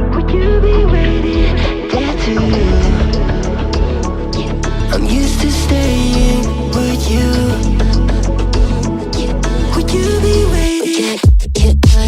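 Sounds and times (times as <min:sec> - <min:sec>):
melodic music with steady beat: 0:00.0 - 0:12.0.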